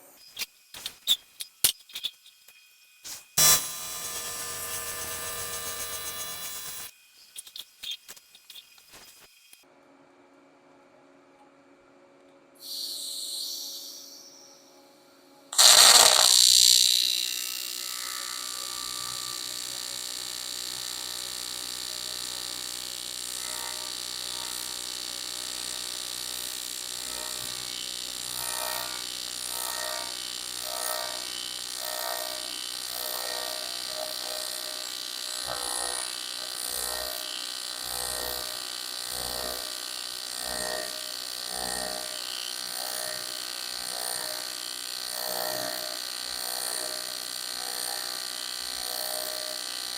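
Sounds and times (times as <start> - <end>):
welding arc buzzing: 3.1 - 6.9, 15.6 - 49.9
welding arc crackling burst: 3.1 - 6.9, 15.6 - 16.9.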